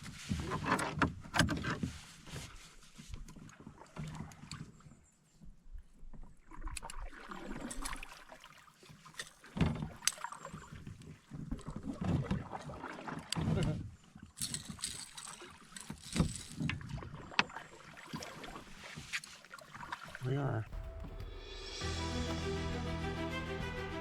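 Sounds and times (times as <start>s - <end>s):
water noise: 17.4s - 24.0s.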